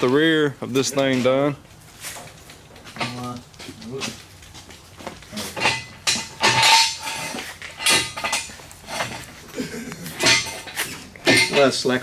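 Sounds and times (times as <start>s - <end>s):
metal tools clanking: 2.2s - 3.4s, 5.4s - 12.0s.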